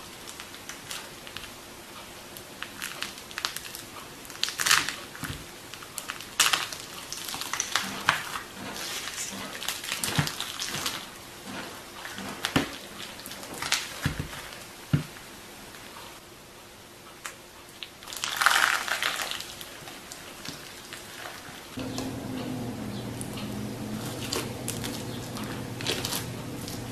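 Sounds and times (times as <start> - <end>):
slime crust cracking: 2.6 - 11.1, 17.2 - 21.4.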